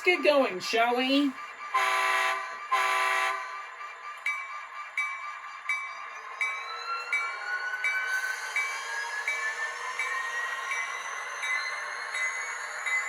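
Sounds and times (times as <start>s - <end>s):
locomotive horn blast: 1.8s - 3.5s.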